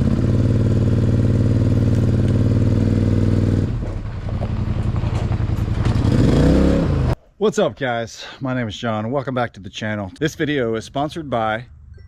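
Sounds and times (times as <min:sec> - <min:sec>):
large vehicle engine idling: 0:00.0 - 0:06.1.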